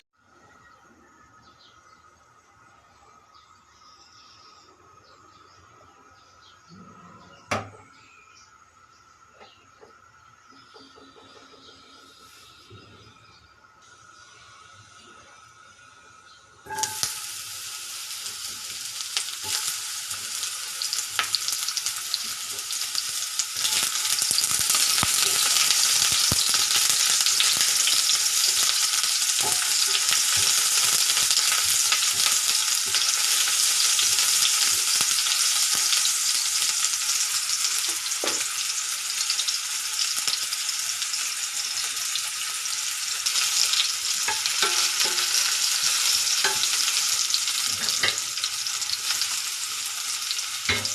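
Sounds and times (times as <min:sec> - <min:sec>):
food sizzling in a pan: 0:13.8 - 0:50.9.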